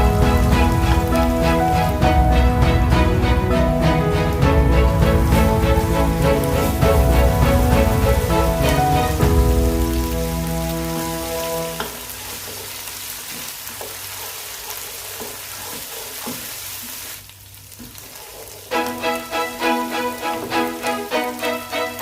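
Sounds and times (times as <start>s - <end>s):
background music: 0.0s - 12.5s, 18.7s - 22.0s
food sizzling in a pan: 0.0s - 22.0s.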